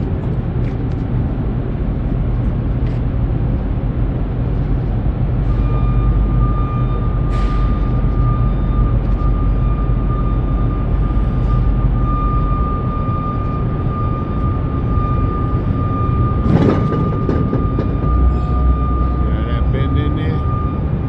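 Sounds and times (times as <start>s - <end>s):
continuous high-pitched tone: 0.0s - 21.0s
low machinery rumble: 0.0s - 21.0s.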